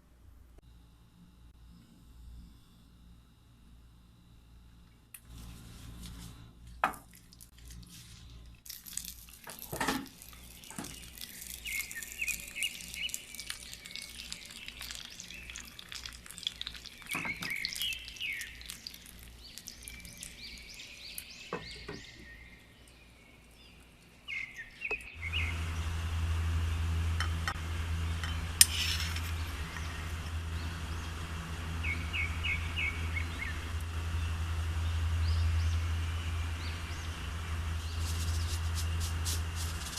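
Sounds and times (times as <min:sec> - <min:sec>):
low hum with hiss: 0:00.0 - 0:39.9
birds chirping: 0:10.2 - 0:39.9.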